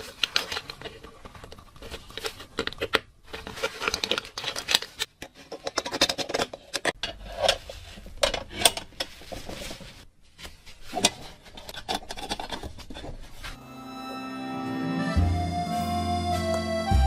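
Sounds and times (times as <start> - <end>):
small metal parts clicking and scraping: 0.0 - 9.4, 10.9 - 13.1.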